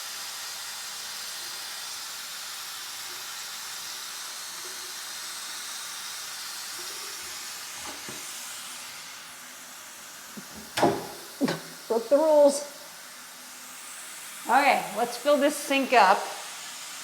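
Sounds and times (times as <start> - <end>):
water running from faucet into sink: 0.0 - 17.0
faint knocks: 10.4 - 11.8.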